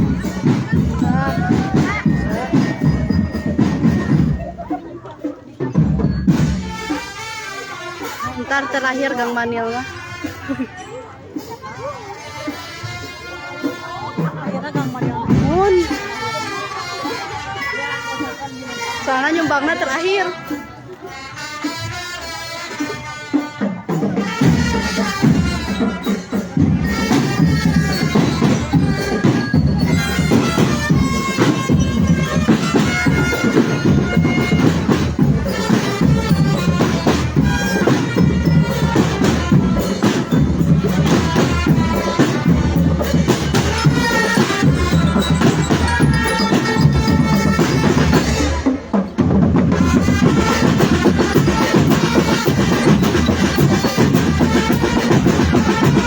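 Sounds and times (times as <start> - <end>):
marching drum band playing: 0.0 - 56.0.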